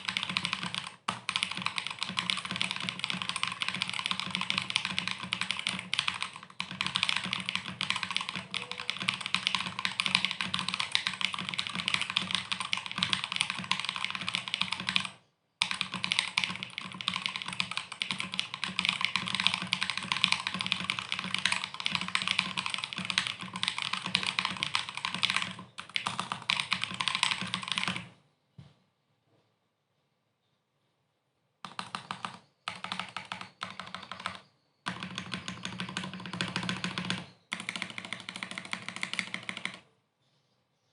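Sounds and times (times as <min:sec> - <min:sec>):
mechanical keyboard typing: 0:00.0 - 0:28.1, 0:31.6 - 0:39.9.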